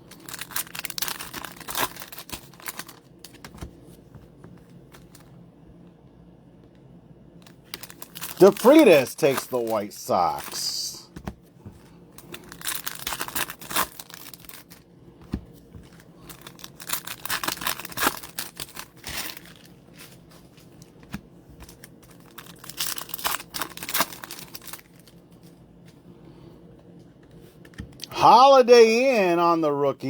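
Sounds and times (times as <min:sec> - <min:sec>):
foil wrappers crinkling and tearing: 0:00.0 - 0:03.4, 0:07.7 - 0:10.9, 0:12.2 - 0:14.8, 0:15.8 - 0:20.8, 0:21.6 - 0:25.2.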